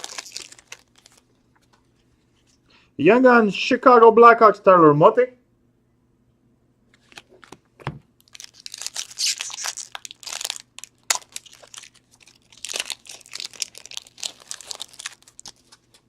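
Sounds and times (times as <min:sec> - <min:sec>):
foil wrapper crinkling and tearing: 0:00.0 - 0:01.3, 0:08.2 - 0:16.0.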